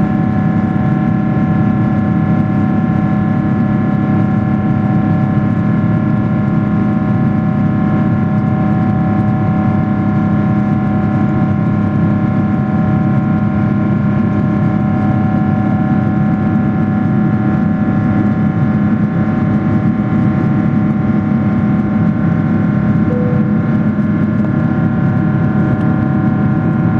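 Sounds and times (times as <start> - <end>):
jet engine cabin hum: 23.1 - 26.0.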